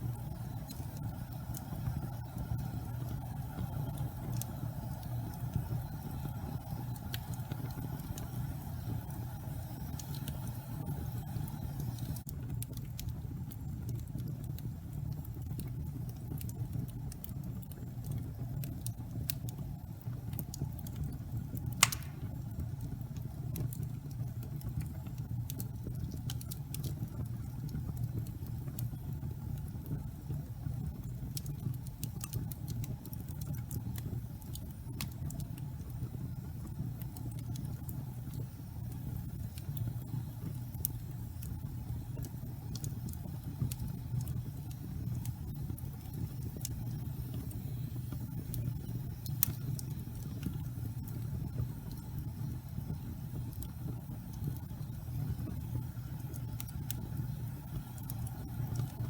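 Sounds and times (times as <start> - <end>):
fire crackling and snapping: 0.0 - 59.0
low rumble of flames: 0.0 - 59.0
loud pop from fire: 21.8 - 22.4.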